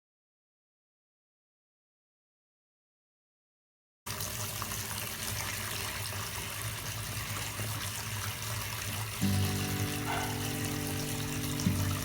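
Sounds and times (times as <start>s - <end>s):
water running from a tap: 4.1s - 12.0s
music: 9.2s - 12.0s.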